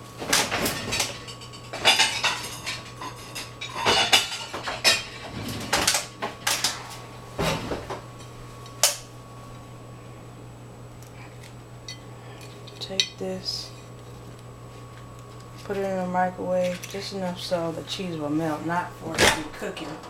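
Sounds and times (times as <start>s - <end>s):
dishes and cutlery clattering: 0.4s - 6.8s.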